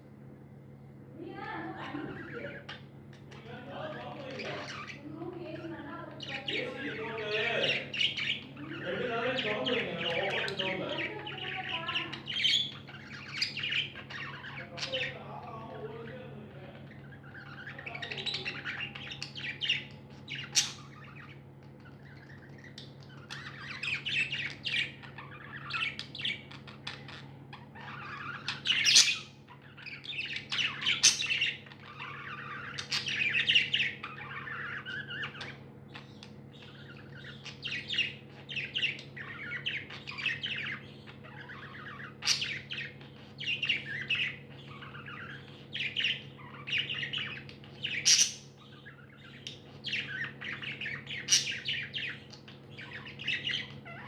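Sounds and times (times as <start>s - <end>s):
steady low hum: 0.0s - 54.0s
budgies chirping: 1.2s - 54.0s.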